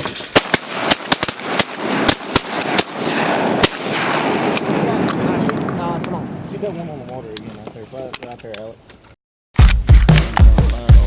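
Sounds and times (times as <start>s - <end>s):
shotgun blasts: 0.0s - 5.5s.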